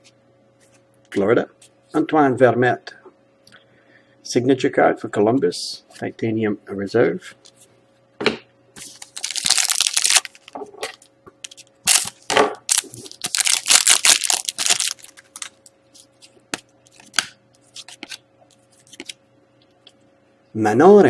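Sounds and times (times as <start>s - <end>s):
card pack wrapper tearing and crinkling: 8.8s - 10.6s, 11.9s - 15.6s
cards being handled: 8.8s - 10.6s, 11.4s - 19.2s.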